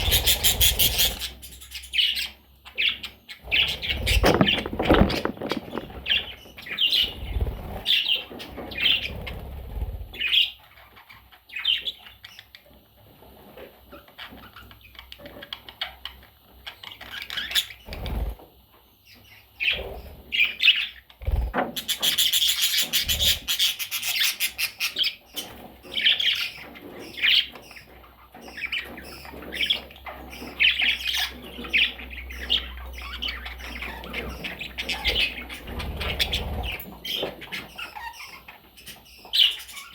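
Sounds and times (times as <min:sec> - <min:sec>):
budgerigars chirping and squawking: 0:00.0 - 0:12.8, 0:13.5 - 0:18.4, 0:19.0 - 0:39.9
rustling: 0:03.8 - 0:07.8
soft thumps: 0:04.1 - 0:06.2.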